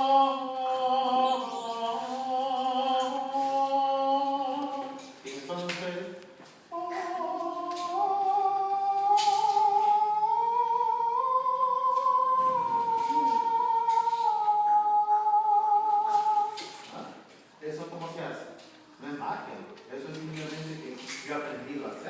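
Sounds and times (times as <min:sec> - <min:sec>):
man singing a long note: 0:00.0 - 0:05.1, 0:06.7 - 0:16.9.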